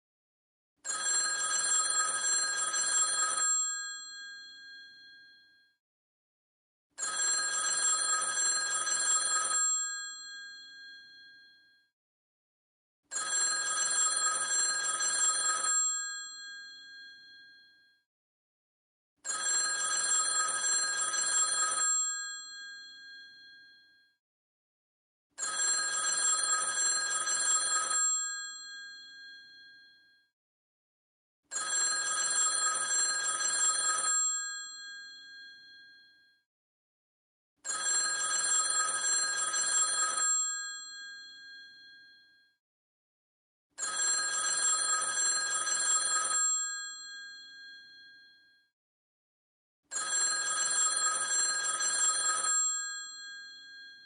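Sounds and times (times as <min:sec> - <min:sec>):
telephone bell ringing: 0:00.8 - 0:05.7, 0:07.0 - 0:11.8, 0:13.1 - 0:17.9, 0:19.2 - 0:24.0, 0:25.4 - 0:30.2, 0:31.5 - 0:36.3, 0:37.6 - 0:42.4, 0:43.8 - 0:48.5, 0:49.9 - 0:54.0.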